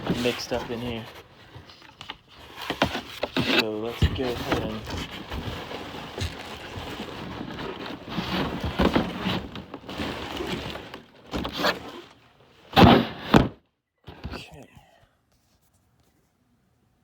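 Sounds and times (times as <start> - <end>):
cardboard box rustling and scraping: 0.0 - 14.4.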